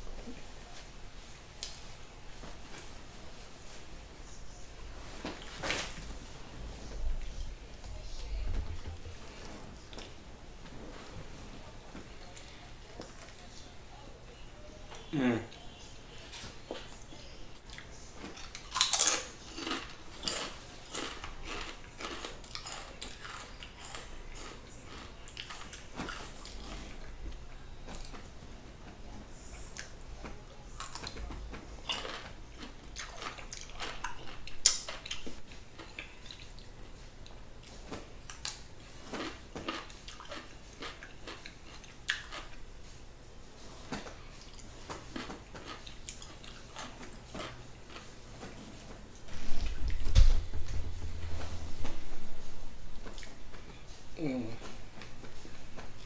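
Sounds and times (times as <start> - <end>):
wet chewing: 17.6 - 28.2, 30.7 - 42.6, 43.9 - 48.1.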